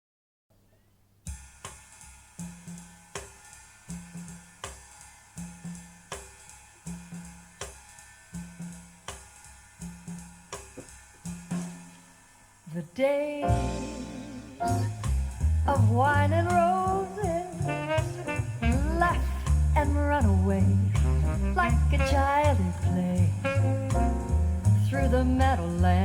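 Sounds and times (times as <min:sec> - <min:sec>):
jazz drums with cymbal and kick: 0:01.2 - 0:26.0
walking bass: 0:13.5 - 0:26.0.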